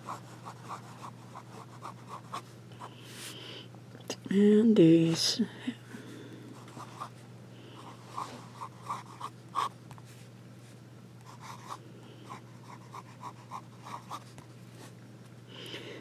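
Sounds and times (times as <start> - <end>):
fountain pen scratching on paper: 0.0 - 2.4, 8.1 - 9.7, 11.3 - 14.3
faint steady hum: 0.0 - 16.0.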